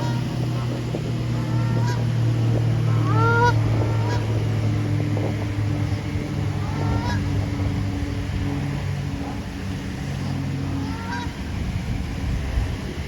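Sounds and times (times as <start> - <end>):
goose honking: 0.0 - 2.2, 2.8 - 4.4, 6.5 - 7.3, 10.2 - 11.4
steady low hum: 0.0 - 13.0.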